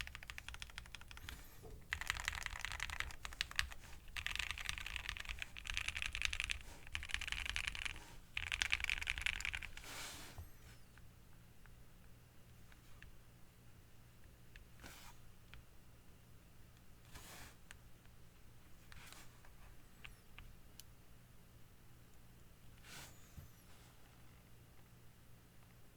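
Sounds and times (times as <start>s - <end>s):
fast typing on mechanical keyboard: 0.0s - 9.9s.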